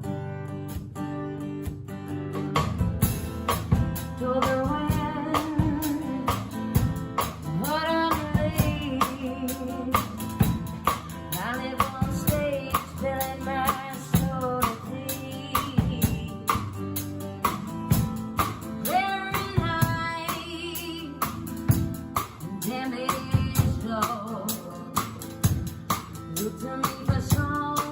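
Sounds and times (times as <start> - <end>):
strummed guitar: 0.0 - 27.9
woman singing: 4.0 - 16.9, 18.8 - 27.9.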